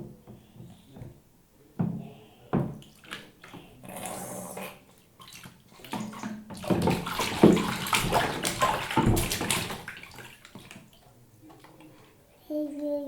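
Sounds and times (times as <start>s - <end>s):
bathwater splashing: 2.8s - 12.0s.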